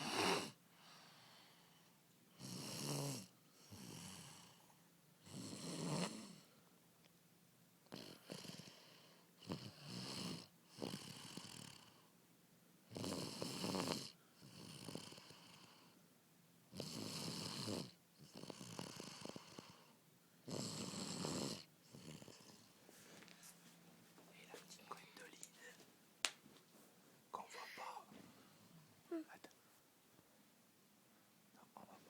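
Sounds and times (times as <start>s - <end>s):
soft breath: 0.7s - 2.0s, 22.2s - 25.9s
man snoring loudly: 2.4s - 4.5s, 5.3s - 6.4s, 12.9s - 15.4s, 16.8s - 19.7s, 20.5s - 22.4s.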